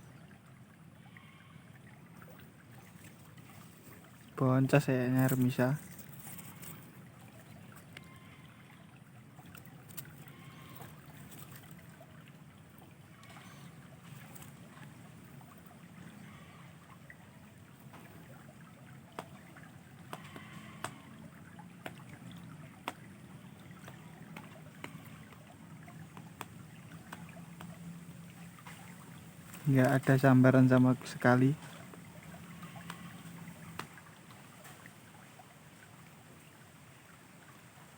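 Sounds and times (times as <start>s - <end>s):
faint trickle of river water: 0.0s - 37.9s.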